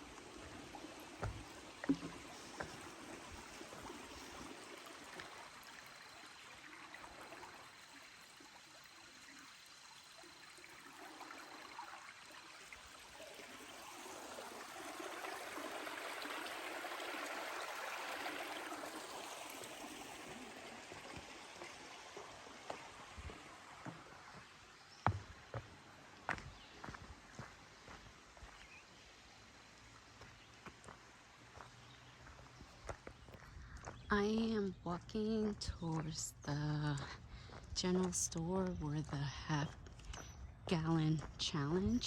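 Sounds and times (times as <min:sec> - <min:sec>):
stream running: 0:00.0 - 0:42.0.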